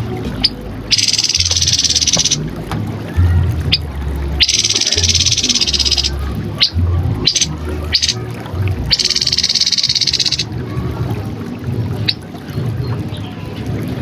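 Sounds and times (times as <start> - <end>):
low droning hum: 0.0 - 9.0
bird buzzing trills: 0.9 - 2.4, 4.4 - 8.2, 8.9 - 10.5
sharp high bird notes: 0.9 - 2.4, 4.4 - 8.2, 8.9 - 10.5.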